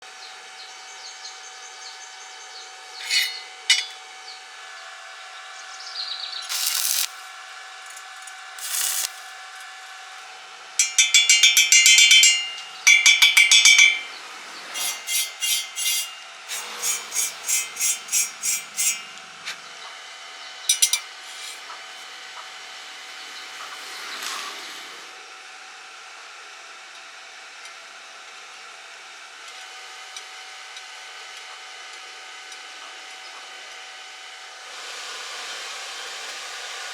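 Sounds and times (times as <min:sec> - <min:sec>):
hand tool scraping: 0:03.0 - 0:04.0, 0:06.4 - 0:10.2, 0:10.8 - 0:19.6, 0:20.7 - 0:21.7.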